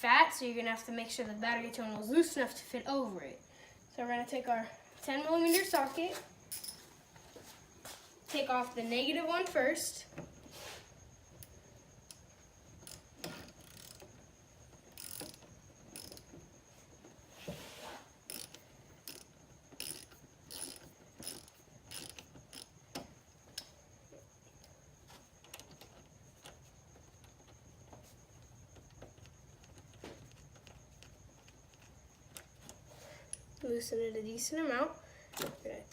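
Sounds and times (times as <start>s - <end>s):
ratchet clicking: 11.4s - 16.4s, 18.3s - 22.8s.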